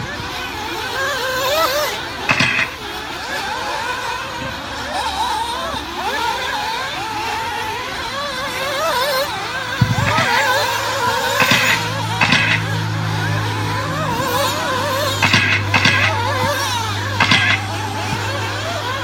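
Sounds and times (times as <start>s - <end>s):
rc car engines whining: 0.0s - 19.0s
clicks: 2.3s - 2.8s, 9.8s - 10.5s, 11.4s - 12.8s, 15.0s - 18.4s.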